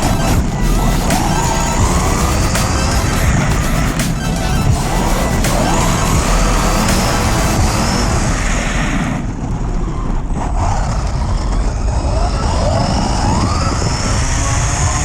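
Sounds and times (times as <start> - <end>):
electric motor whining: 0.0 - 9.2
wind and tyres rumbling: 0.0 - 15.0.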